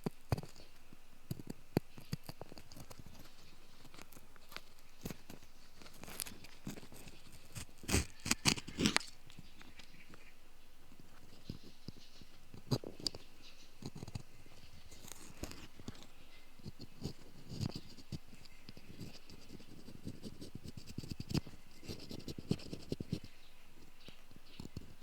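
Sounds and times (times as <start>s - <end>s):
ear pick scraping in ear: 1.4s - 10.3s.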